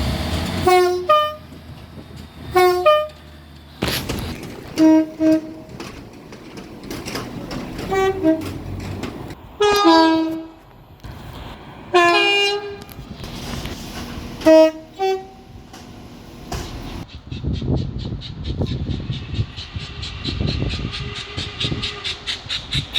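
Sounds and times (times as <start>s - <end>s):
passing train rumble: 0.0s - 22.9s
train horn blasts: 0.5s - 1.6s, 2.4s - 3.2s, 4.7s - 5.9s, 7.8s - 8.8s, 9.6s - 10.6s, 11.9s - 13.0s, 14.2s - 16.2s.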